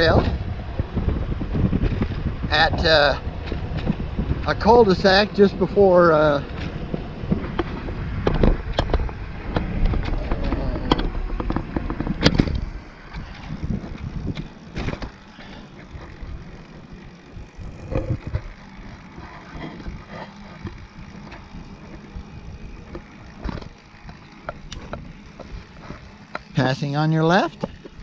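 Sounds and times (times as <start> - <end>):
wind on microphone: 0.0 - 15.3, 15.9 - 23.7
bicycle tyres rolling on trail: 0.0 - 28.0.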